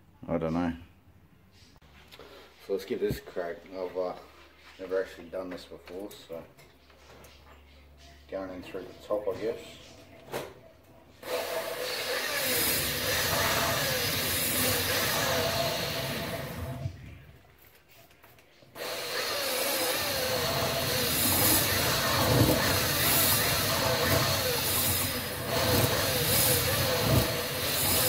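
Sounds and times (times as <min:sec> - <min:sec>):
power drill spinning a hone: 0:11.2 - 0:17.0, 0:18.8 - 0:28.0.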